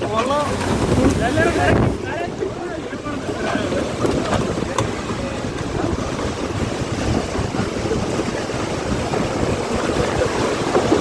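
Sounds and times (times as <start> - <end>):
gusting wind: 0.0 - 11.0
heavy rain: 0.0 - 11.0.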